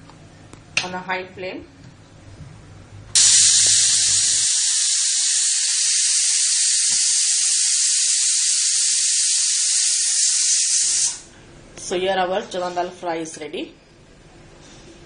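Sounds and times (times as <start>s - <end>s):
pressure cooker whistle hissing: 3.2s - 11.3s.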